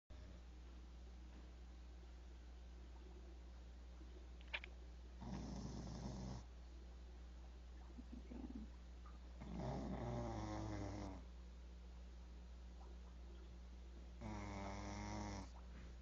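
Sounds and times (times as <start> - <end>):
dog snoring: 5.2 - 6.5, 9.4 - 11.2, 14.2 - 15.6.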